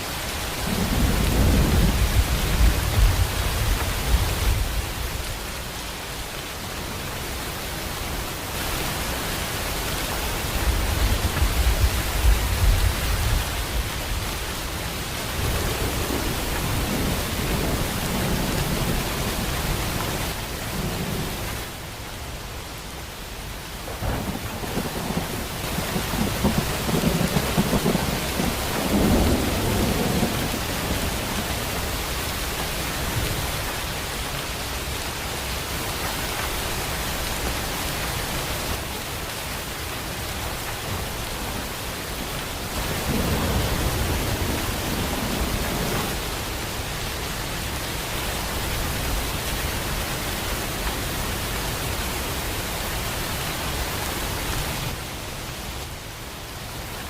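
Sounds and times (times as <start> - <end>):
heavy rain hissing: 0.0 - 57.0
deep thunder rumbling: 0.6 - 4.9, 15.3 - 20.0, 23.8 - 31.8, 42.7 - 46.5.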